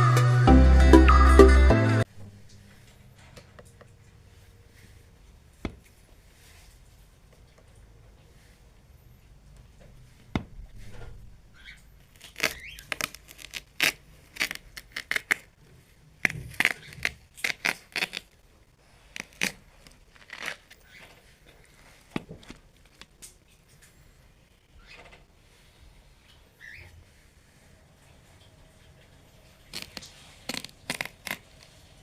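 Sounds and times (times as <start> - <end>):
watermelon cracking: 12.0 - 20.8, 21.4 - 23.6, 29.6 - 31.8.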